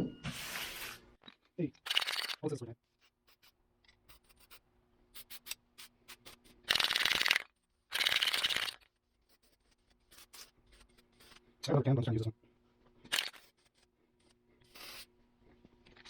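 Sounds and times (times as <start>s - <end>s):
spray paint can hissing: 1.9s - 2.4s, 5.2s - 8.8s, 13.1s - 13.6s, 14.6s - 15.1s.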